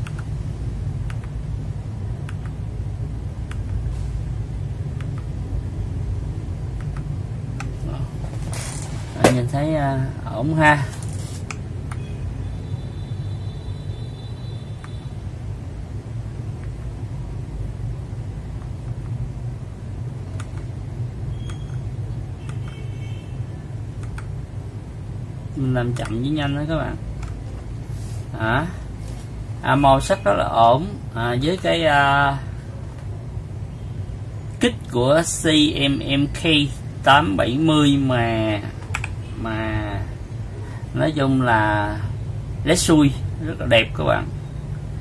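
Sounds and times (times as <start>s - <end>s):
short high beeps: 21.3s - 21.8s
mechanical keyboard clicks: 38.9s - 39.2s.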